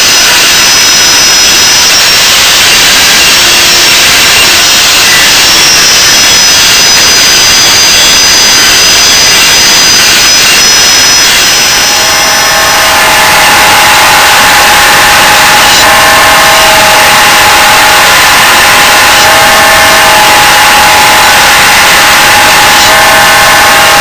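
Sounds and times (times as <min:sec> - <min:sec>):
thin high whine: 0:00.0 - 0:24.0
lower tone: 0:10.2 - 0:21.5
belt sander grinding steel: 0:10.9 - 0:18.1.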